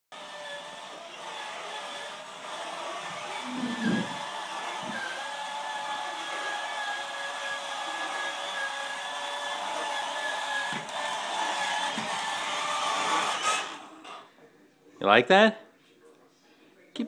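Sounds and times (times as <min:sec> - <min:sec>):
toy electric motor whining: 0:00.2 - 0:14.2.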